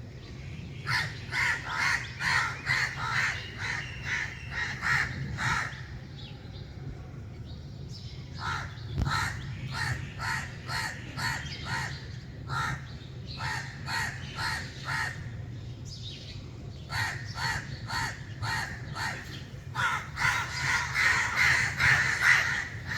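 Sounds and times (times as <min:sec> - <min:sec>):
steady low hum: 0:00.0 - 0:22.9
crows cawing: 0:00.9 - 0:05.8, 0:08.4 - 0:15.3, 0:16.9 - 0:22.9.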